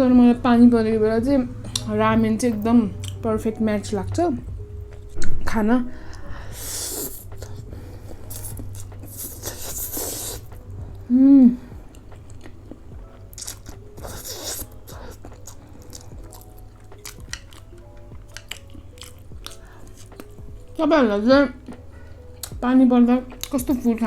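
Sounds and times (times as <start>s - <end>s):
faint background music: 0.0s - 24.0s
person humming mm: 6.6s - 11.7s
slurping noodles: 9.1s - 10.5s
wet chewing: 11.9s - 20.6s.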